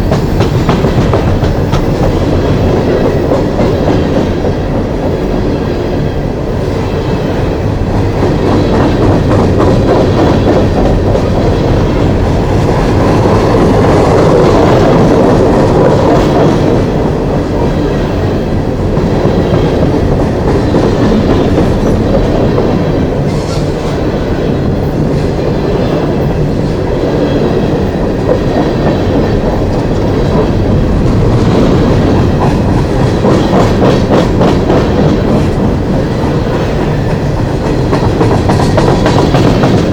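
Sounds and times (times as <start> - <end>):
train wheels clacking over rail joints: 0.0 - 5.2, 27.7 - 39.9.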